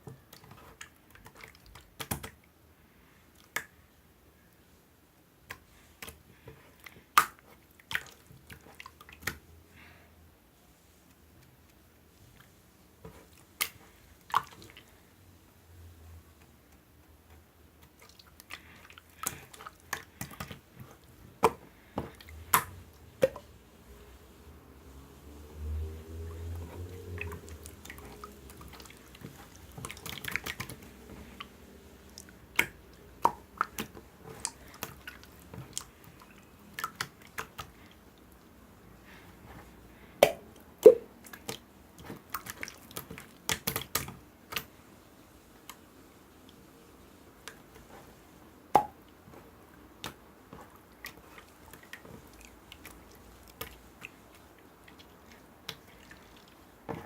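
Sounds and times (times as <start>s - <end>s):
small clicks and taps: 0.0s - 2.4s.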